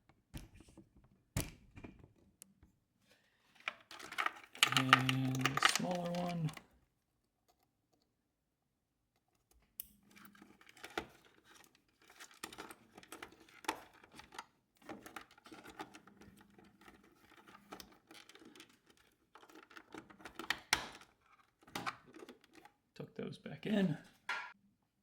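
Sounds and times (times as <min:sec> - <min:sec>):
hands rustling and scraping wires: 0:03.5 - 0:08.2, 0:09.1 - 0:22.8.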